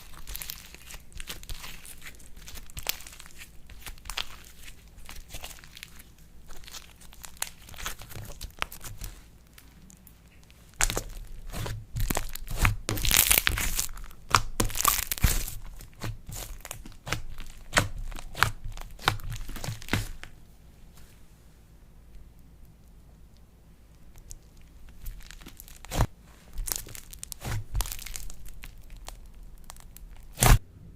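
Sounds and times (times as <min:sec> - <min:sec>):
slime crackling and popping: 0:00.0 - 0:20.3, 0:23.3 - 0:30.6.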